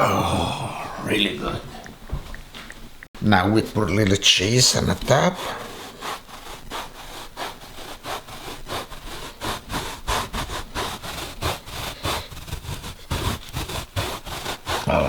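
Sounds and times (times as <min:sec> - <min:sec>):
cheese grating on metal grater: 0:04.5 - 0:15.0.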